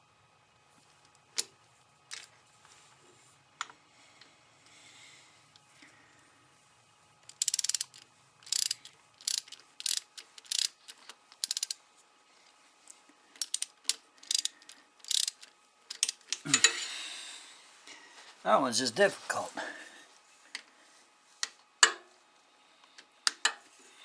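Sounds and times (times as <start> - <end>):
ratchet wrench clicking: 7.2 - 11.8, 13.4 - 16.4.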